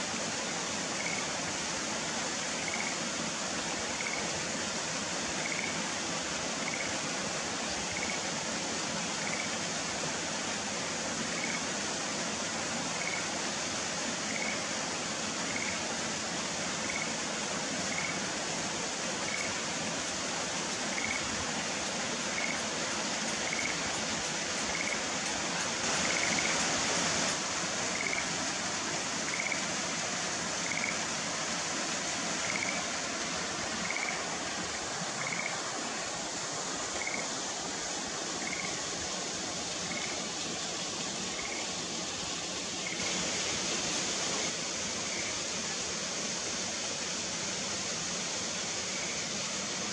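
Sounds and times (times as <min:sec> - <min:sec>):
tree frog calling: 0:01.0 - 0:01.3, 0:02.6 - 0:03.0, 0:04.0 - 0:04.2, 0:05.4 - 0:05.8, 0:06.6 - 0:06.9, 0:08.0 - 0:08.2, 0:09.2 - 0:09.6, 0:11.3 - 0:11.6, 0:13.0 - 0:13.3, 0:14.3 - 0:14.7, 0:15.5 - 0:15.8, 0:16.8 - 0:17.1, 0:17.9 - 0:18.2, 0:19.3 - 0:19.6, 0:20.9 - 0:21.3, 0:22.3 - 0:22.6, 0:23.4 - 0:23.8, 0:24.7 - 0:25.1, 0:27.9 - 0:28.3, 0:29.2 - 0:29.6, 0:30.6 - 0:31.0, 0:32.4 - 0:32.9, 0:33.8 - 0:34.3, 0:35.1 - 0:35.6, 0:37.0 - 0:37.4, 0:38.4 - 0:38.8, 0:39.8 - 0:40.3, 0:41.4 - 0:41.7
steady rushing noise: 0:16.9 - 0:49.1.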